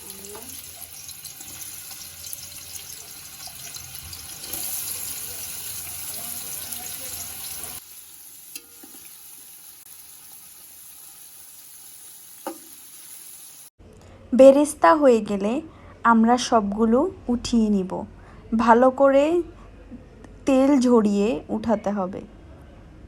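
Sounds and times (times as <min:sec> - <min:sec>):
onions sizzling in oil: 0:00.0 - 0:13.8.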